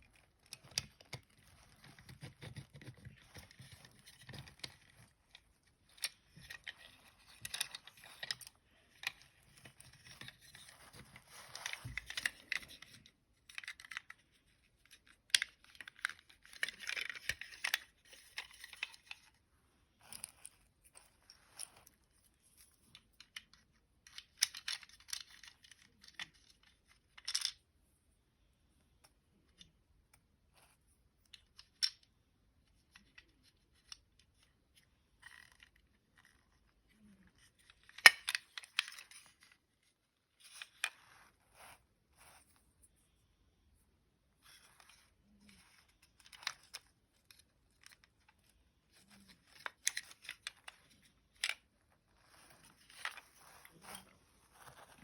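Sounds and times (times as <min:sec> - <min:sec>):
scraping and rustling: 0:00.1 - 0:13.0, 0:48.9 - 0:55.0
toy parts clicking: 0:02.1 - 0:10.9, 0:22.9 - 0:27.6.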